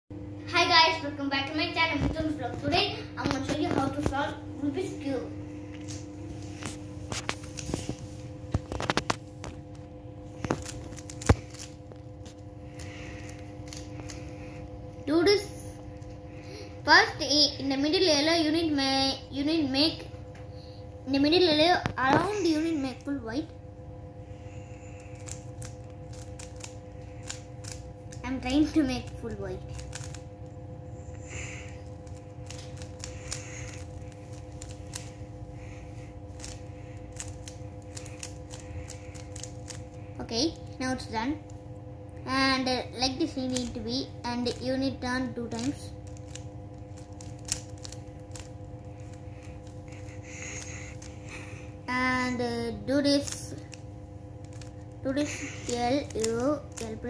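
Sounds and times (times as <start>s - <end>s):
steady low hum: 0.1s - 57.0s
puzzle cube plastic clicks: 25.0s - 27.9s, 29.7s - 30.2s, 31.8s - 35.1s, 36.3s - 39.9s, 43.2s - 43.8s, 45.5s - 51.2s, 54.4s - 57.0s.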